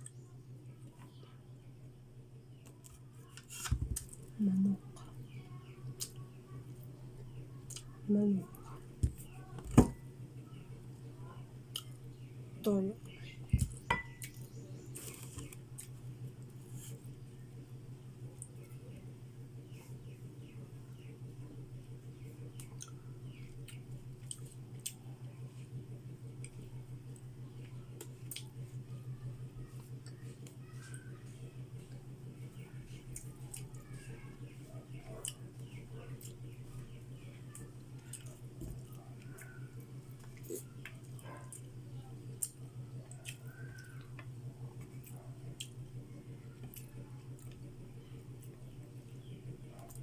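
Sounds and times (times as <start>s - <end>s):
low steady hum: 0.0s - 50.0s
person chewing food: 11.7s - 12.1s, 22.5s - 25.0s, 37.5s - 45.8s.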